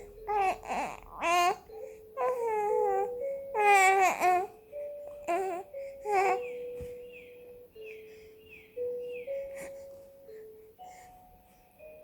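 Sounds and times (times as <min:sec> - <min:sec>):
baby cooing and crying: 0:00.0 - 0:06.6
soft melody of held notes: 0:00.0 - 0:12.0.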